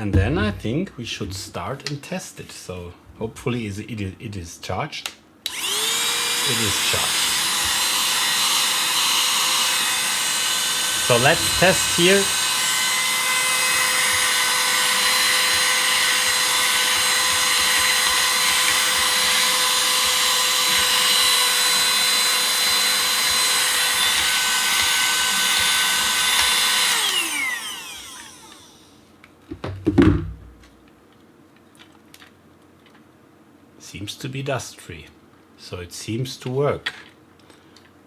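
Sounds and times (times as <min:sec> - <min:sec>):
handheld vacuum cleaner whining: 0:05.5 - 0:29.0
short knocks: 0:29.5 - 0:30.8.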